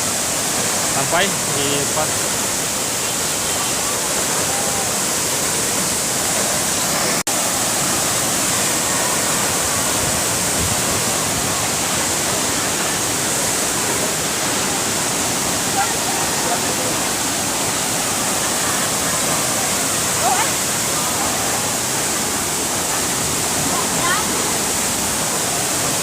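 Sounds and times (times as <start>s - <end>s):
heavy waterfall rushing: 0.0s - 26.0s.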